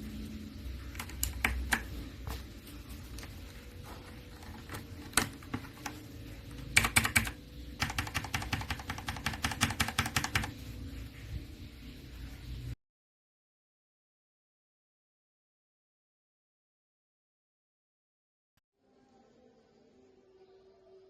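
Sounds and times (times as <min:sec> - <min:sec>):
mechanical keyboard typing: 0:00.9 - 0:02.0, 0:04.0 - 0:10.6.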